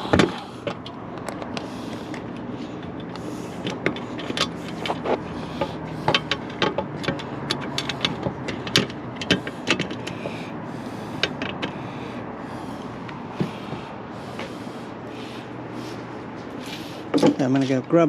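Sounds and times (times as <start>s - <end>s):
sharp metal clicks and taps: 0.1s - 10.2s
rubbing and scraping on metal: 1.6s - 17.8s.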